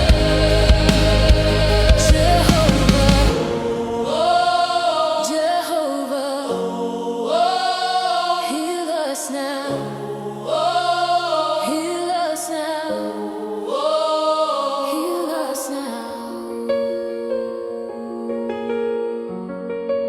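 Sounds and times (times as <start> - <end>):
sustained chords: 0.0 - 5.7
choir singing wordless melody: 0.0 - 19.5.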